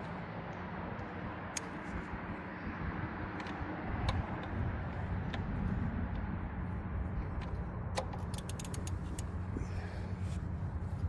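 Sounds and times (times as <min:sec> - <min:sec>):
tools clicking against metal: 0:08.0 - 0:09.3.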